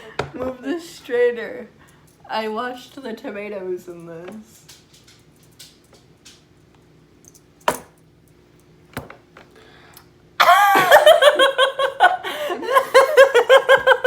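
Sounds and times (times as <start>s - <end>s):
hearty laughter: 10.4s - 14.0s.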